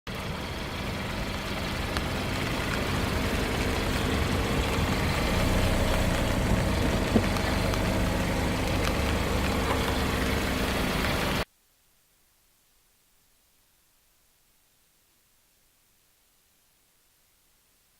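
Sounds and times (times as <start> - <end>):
car engine running: 0.1 - 11.4.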